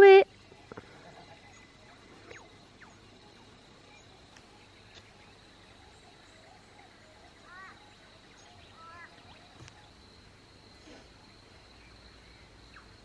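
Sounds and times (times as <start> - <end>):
insect drone: 0.0 - 13.0.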